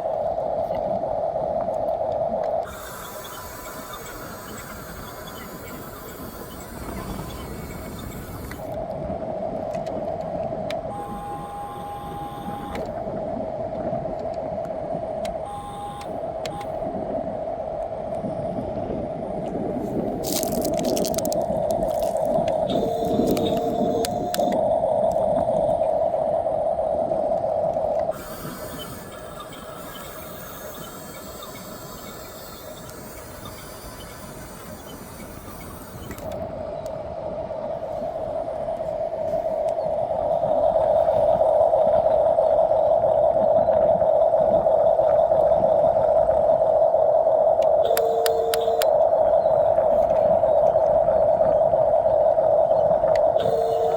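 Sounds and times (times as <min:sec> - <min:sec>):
steady hiss: 0:00.0 - 0:08.9, 0:19.6 - 0:53.9
electric motors whining: 0:02.7 - 0:08.8, 0:11.0 - 0:12.9, 0:15.5 - 0:16.7, 0:20.2 - 0:24.7, 0:28.2 - 0:36.4, 0:47.8 - 0:49.0, 0:53.4 - 0:53.9
small clicks: 0:20.2 - 0:25.3, 0:28.4 - 0:37.0, 0:47.6 - 0:49.0.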